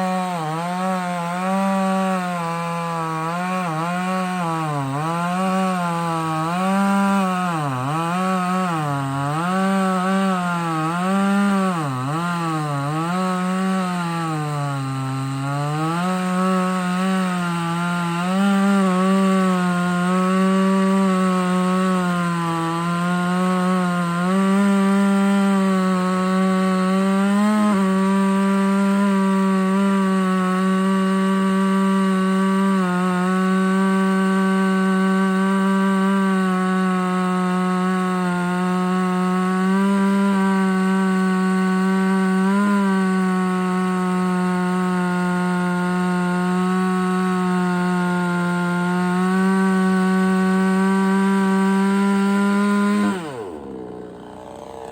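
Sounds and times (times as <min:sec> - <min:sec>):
chainsaw cutting through log: 0:00.0 - 0:54.9.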